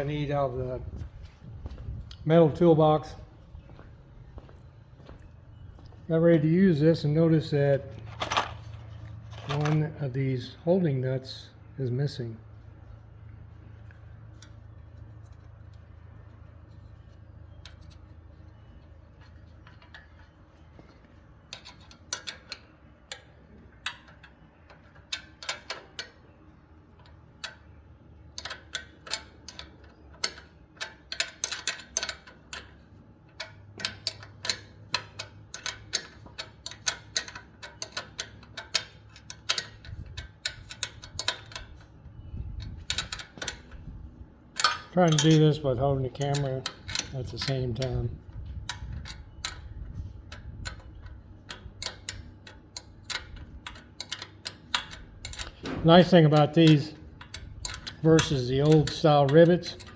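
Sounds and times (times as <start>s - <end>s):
metal tools clicking and clinking: 7.4s - 10.0s, 28.3s - 43.9s, 44.5s - 59.9s.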